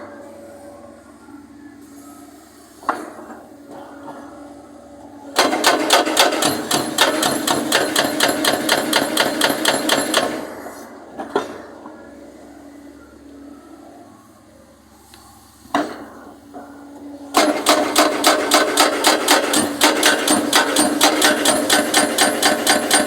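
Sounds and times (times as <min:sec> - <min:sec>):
hydraulic breaker hammer blows: 0:05.4 - 0:10.7, 0:17.3 - 0:23.0.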